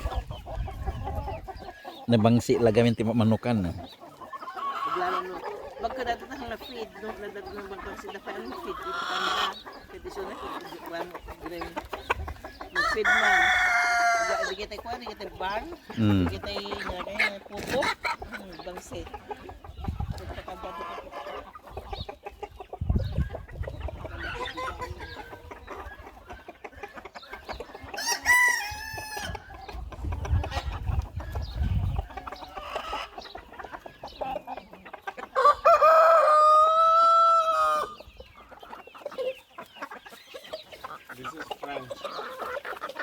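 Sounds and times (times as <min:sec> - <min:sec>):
chickens clucking: 0:00.0 - 0:43.0
rooster crowing: 0:35.4 - 0:38.0.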